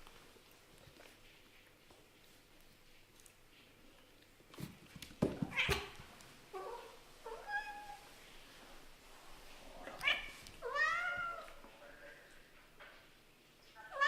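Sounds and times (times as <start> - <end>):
cats meowing: 9.8 - 11.6, 13.8 - 14.0.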